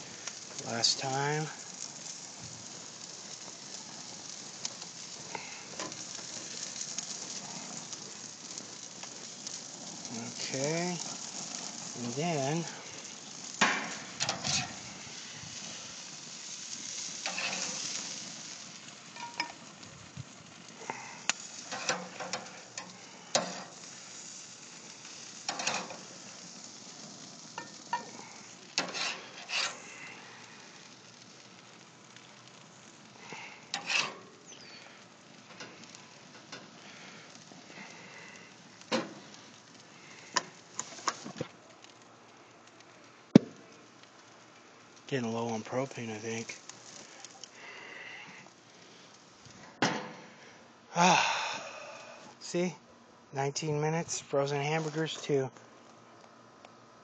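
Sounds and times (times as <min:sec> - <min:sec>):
patties sizzling on a grill: 0:00.0 - 0:57.0
clicks and scrapes: 0:28.8 - 0:29.8, 0:33.7 - 0:34.3.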